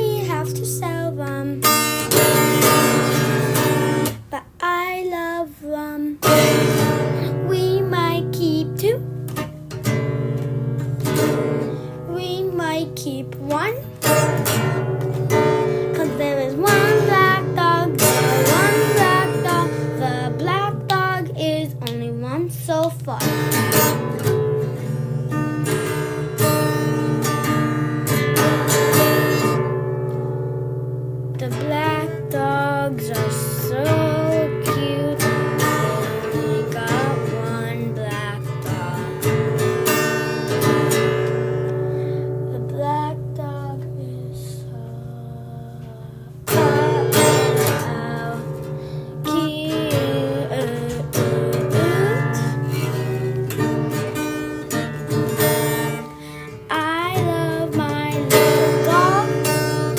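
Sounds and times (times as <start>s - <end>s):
acoustic guitar strumming chords: 0.0s - 59.9s
person singing: 11.1s - 24.2s, 31.4s - 59.9s.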